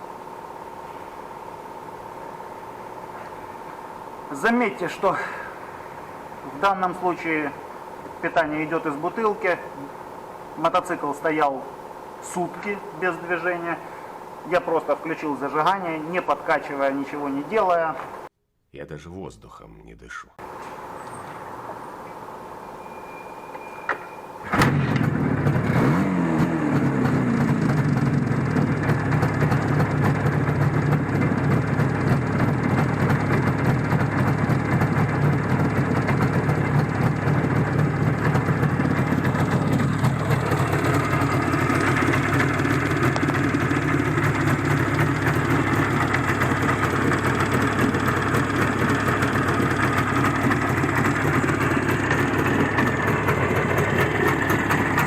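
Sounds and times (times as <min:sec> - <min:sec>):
motorcycle engine idling: 0:26.5 - 0:55.0.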